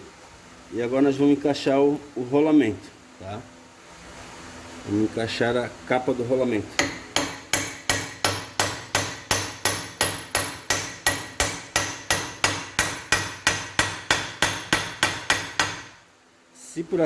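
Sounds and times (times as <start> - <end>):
hammer blows ringing on metal: 6.8 - 16.0.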